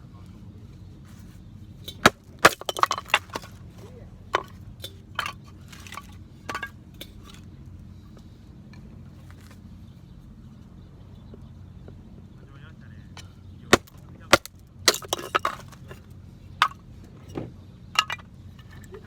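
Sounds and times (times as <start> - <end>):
low background hum: 0.0 - 19.0
camp gear knocking and clinking: 1.1 - 7.6, 13.0 - 19.0.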